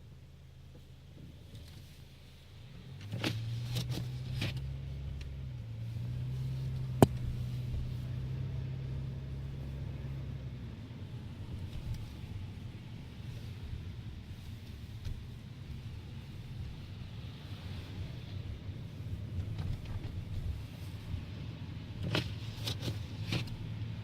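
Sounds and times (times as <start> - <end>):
car engine humming: 0.0 - 24.0.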